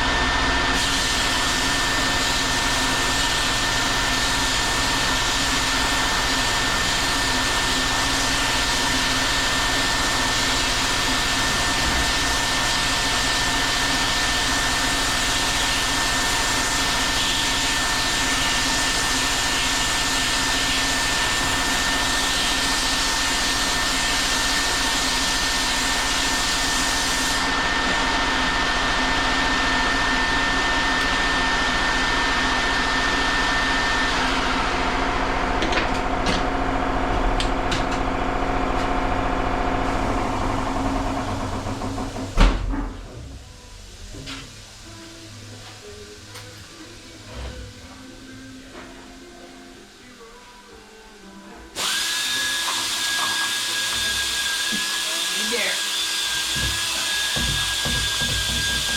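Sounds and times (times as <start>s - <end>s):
blower motor rushing: 38.2s - 42.4s, 51.8s - 58.9s.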